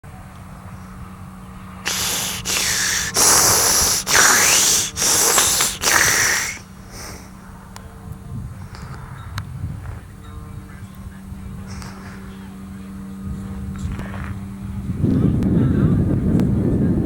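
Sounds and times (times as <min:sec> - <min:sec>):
heavy exaggerated breathing: 0:01.9 - 0:07.4.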